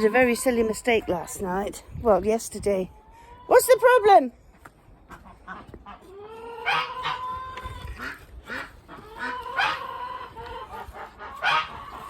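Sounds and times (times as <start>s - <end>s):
ducks quacking loudly: 5.1s - 12.0s.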